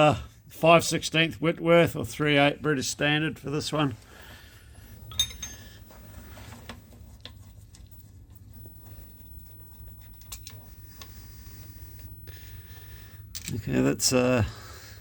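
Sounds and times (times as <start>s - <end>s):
low steady hum: 0.0s - 15.0s
spanner clicking on bolts: 13.3s - 13.7s.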